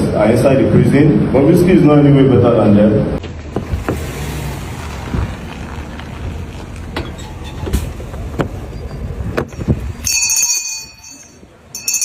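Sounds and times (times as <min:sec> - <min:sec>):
low rumbling background noise: 0:00.0 - 0:12.0
sharp knocks: 0:03.2 - 0:04.1
high ringing bell-like tones: 0:10.0 - 0:12.0.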